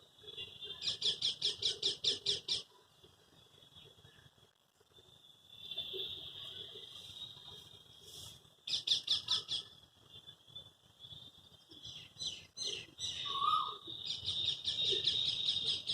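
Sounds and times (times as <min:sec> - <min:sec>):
birds chirping: 0:05.0 - 0:15.9.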